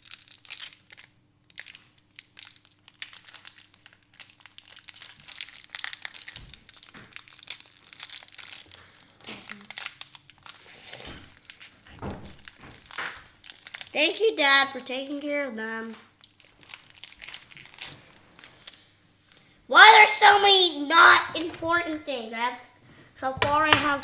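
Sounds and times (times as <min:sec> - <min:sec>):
card packs crinkling and rustling: 0:00.0 - 0:14.0, 0:14.8 - 0:18.9, 0:21.3 - 0:22.0.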